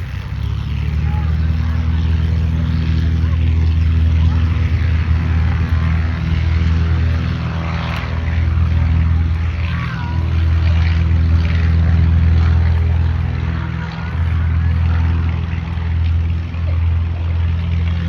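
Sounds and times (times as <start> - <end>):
propeller airplane engines droning: 0.0 - 18.0.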